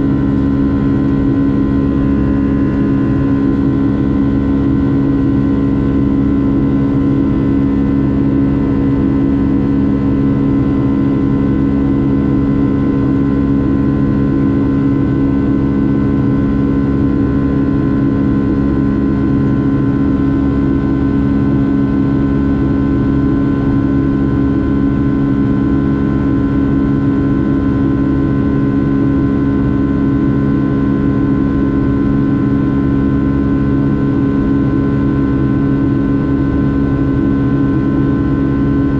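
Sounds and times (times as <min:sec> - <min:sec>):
jet engine drone: 0:00.0 - 0:38.9.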